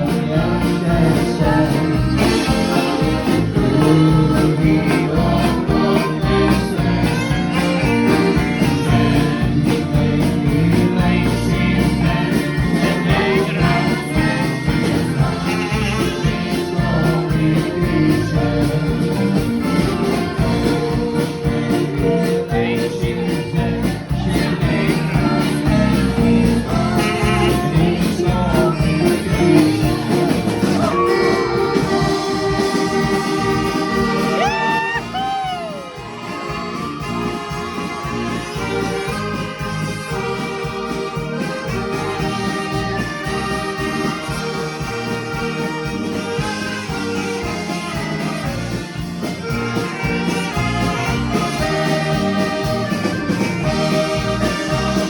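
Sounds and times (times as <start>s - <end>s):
person singing: 0.0s - 37.7s
live band playing: 0.0s - 55.0s.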